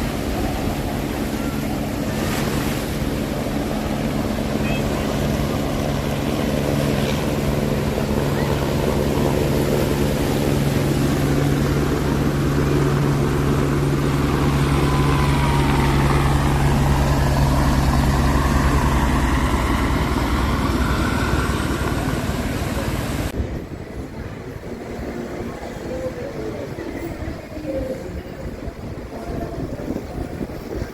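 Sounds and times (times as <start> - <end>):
motor engine droning: 0.0 - 23.3.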